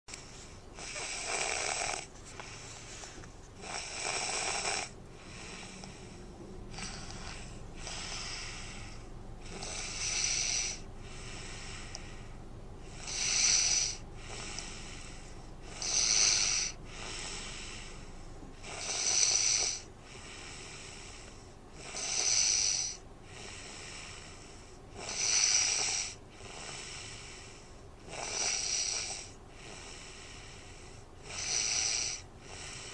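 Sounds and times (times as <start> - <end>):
person snoring with whistle: 0.8 - 2.1, 3.6 - 6.1, 6.7 - 10.8, 13.0 - 15.0, 15.7 - 17.6, 18.6 - 19.9, 21.8 - 23.0, 25.0 - 26.9, 28.1 - 29.4, 31.2 - 32.9.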